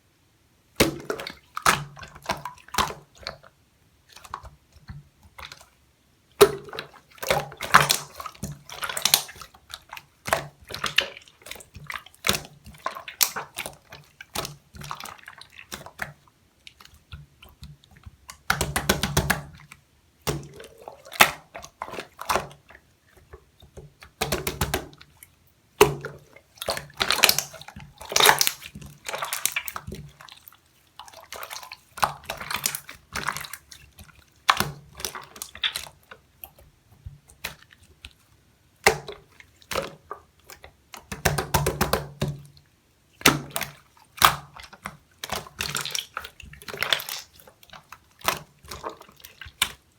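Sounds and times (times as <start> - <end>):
slime squished by hand: 25.8 - 30.4.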